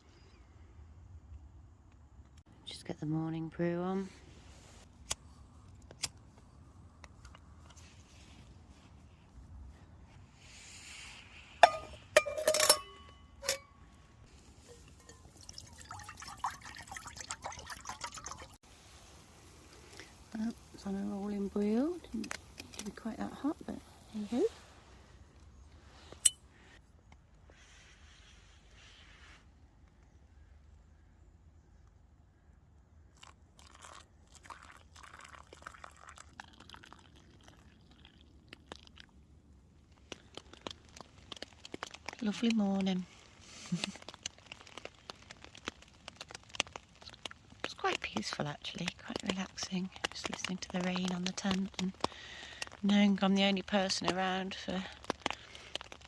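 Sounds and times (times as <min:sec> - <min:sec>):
faint crunching and crackling: 0:04.0 - 0:32.5, 0:33.1 - 0:56.0
water boiling in pot: 0:11.5 - 0:24.9, 0:33.2 - 0:56.0.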